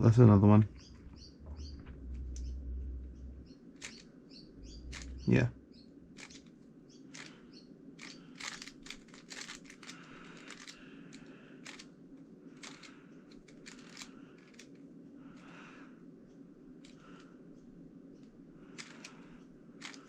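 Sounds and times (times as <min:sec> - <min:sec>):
puzzle cube plastic clicks: 0:08.0 - 0:11.9, 0:12.6 - 0:14.8, 0:18.7 - 0:19.2, 0:19.8 - 0:20.0.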